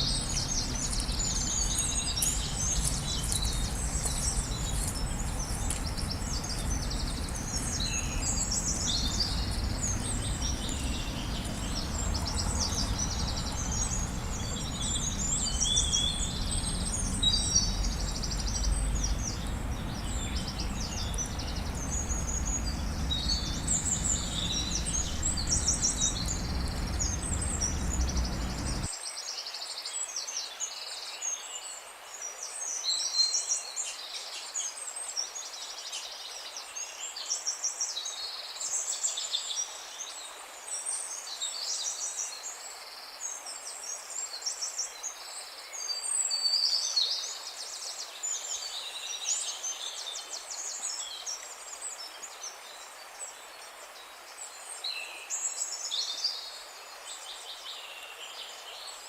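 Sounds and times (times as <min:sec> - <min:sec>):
low rumbling background noise: 0:00.0 - 0:28.9
songbirds chirping and trilling: 0:00.0 - 0:28.9.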